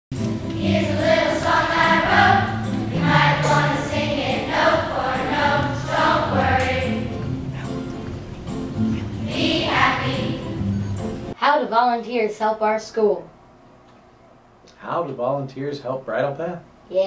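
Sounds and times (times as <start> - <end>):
instrumental backing music: 0.1 - 11.4
choir singing: 0.3 - 7.4, 9.1 - 10.7.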